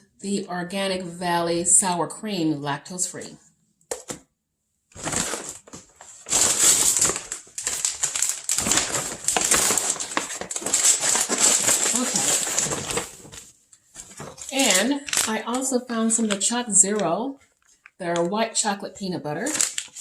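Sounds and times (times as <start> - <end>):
packaging and bags crinkling: 4.9 - 18.3, 19.4 - 20.0.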